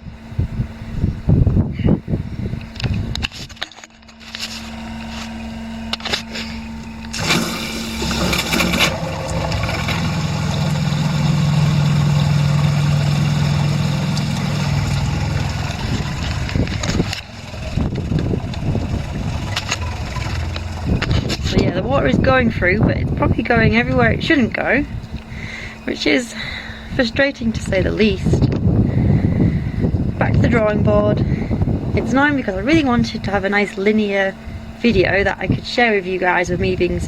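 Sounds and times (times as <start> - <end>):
electric water pump humming: 0.0 - 37.0
water hissing from leak: 7.1 - 21.0.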